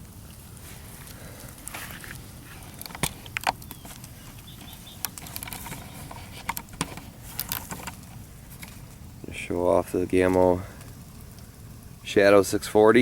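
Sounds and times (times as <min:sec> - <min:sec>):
campfire crackling: 0:00.0 - 0:13.0
fire pops: 0:00.0 - 0:13.0.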